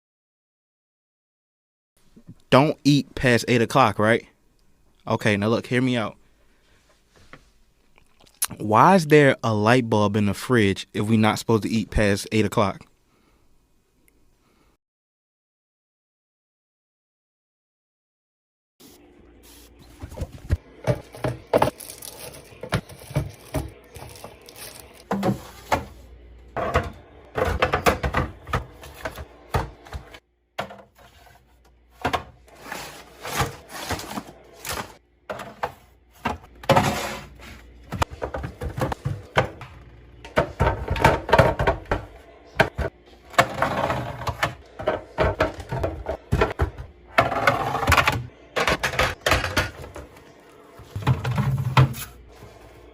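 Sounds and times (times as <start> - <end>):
household items clattering: 19.9 - 52.5.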